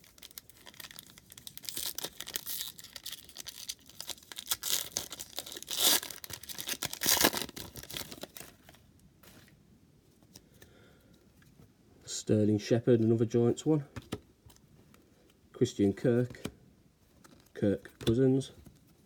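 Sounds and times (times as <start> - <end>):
wrapper ripping: 0.0 - 8.8
wrapper crinkling: 0.0 - 9.4.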